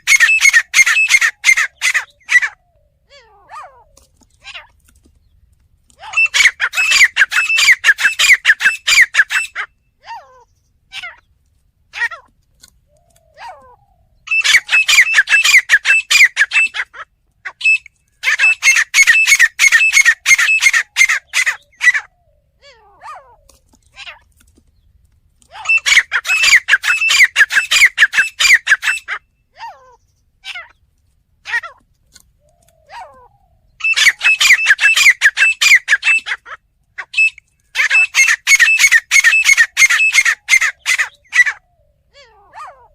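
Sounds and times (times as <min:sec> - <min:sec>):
francolin calling rapid high notes: 0:00.0 - 0:02.6, 0:06.1 - 0:09.7, 0:14.3 - 0:16.9, 0:17.5 - 0:22.0, 0:25.6 - 0:29.2, 0:33.8 - 0:36.4, 0:37.0 - 0:41.6
faint bird chirps: 0:00.0 - 0:11.4, 0:12.2 - 0:30.8, 0:32.4 - 0:36.4, 0:37.0 - 0:42.9.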